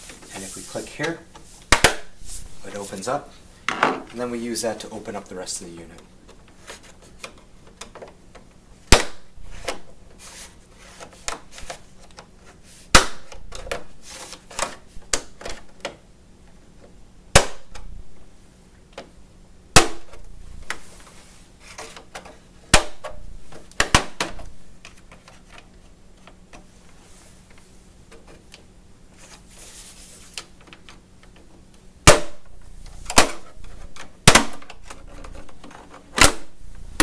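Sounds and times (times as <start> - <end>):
plastic scraping and clicking: 33.0 - 36.4.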